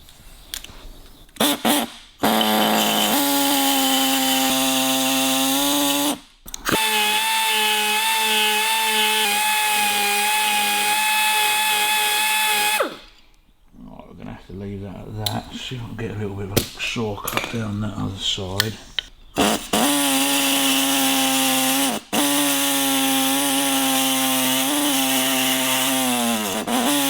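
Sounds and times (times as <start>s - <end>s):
power tool cutting steel: 1.4s - 13.2s, 19.4s - 27.0s.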